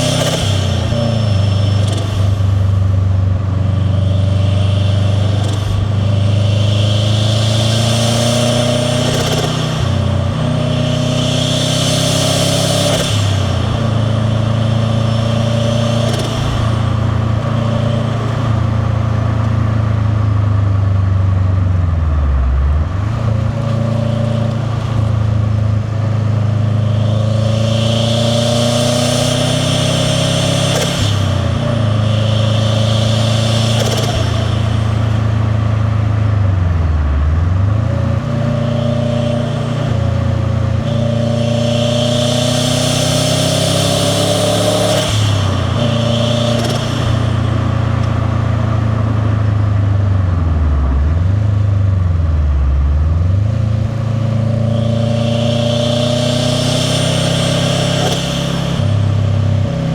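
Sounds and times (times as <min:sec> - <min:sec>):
car engine rumbling exhaust: 0:00.0 - 0:59.9
turbo and intake whistle: 0:37.9 - 0:47.9, 0:54.6 - 0:59.8.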